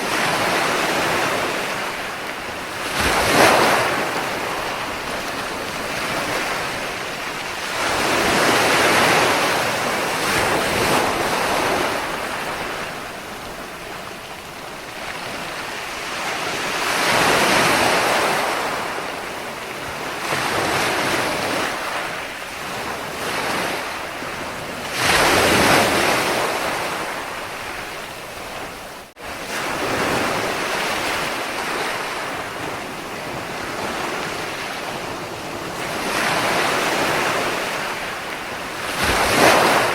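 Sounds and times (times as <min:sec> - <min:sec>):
ocean waves breaking: 0:00.0 - 0:39.9.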